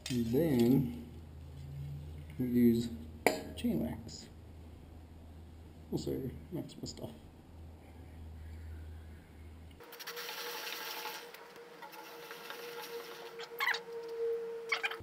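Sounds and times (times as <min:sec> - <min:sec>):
low hum: 0:07.1 - 0:09.9, 0:10.5 - 0:15.0.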